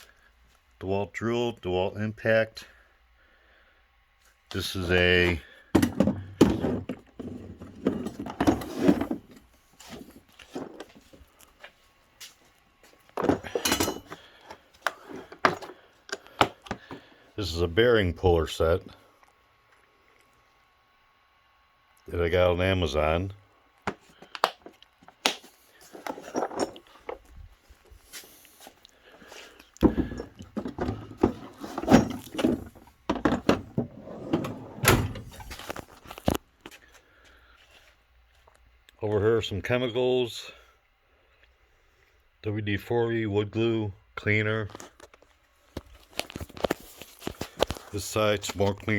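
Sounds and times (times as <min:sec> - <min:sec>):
metal tools clinking in drawer: 0:13.2 - 0:14.2, 0:26.0 - 0:27.0, 0:29.9 - 0:33.6
metal drawer banging shut: 0:29.9 - 0:35.5.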